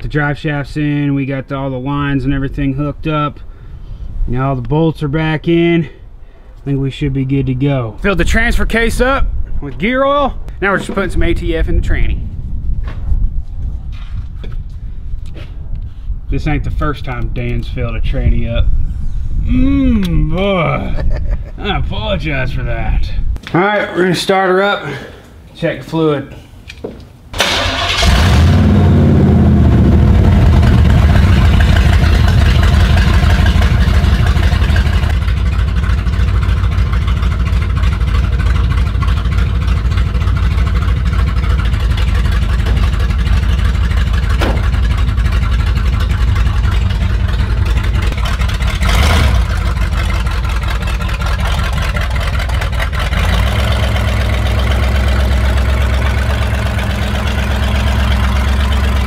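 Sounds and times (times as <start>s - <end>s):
car engine starting and idling: 27.3s - 59.0s.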